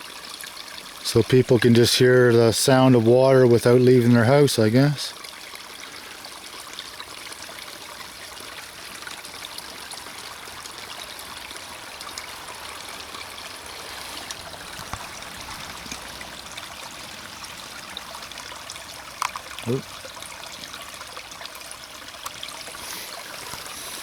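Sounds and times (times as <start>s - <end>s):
stream running over rocks: 0.0s - 24.0s.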